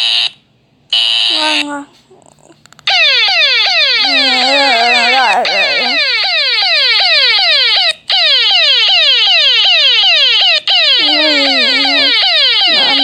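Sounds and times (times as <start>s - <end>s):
electronic alarm falling sweeps: 2.9s - 13.0s.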